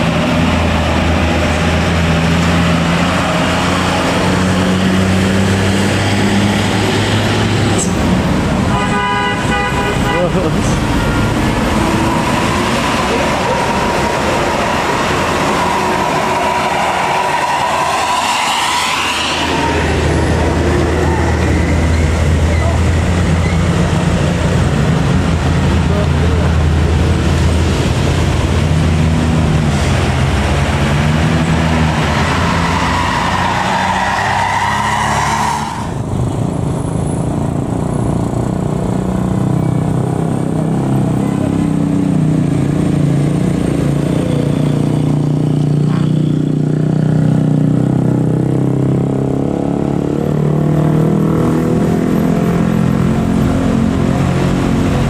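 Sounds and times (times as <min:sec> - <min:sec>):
diesel engines revving: 0:00.0 - 0:55.0
people's voices: 0:10.0 - 0:16.3.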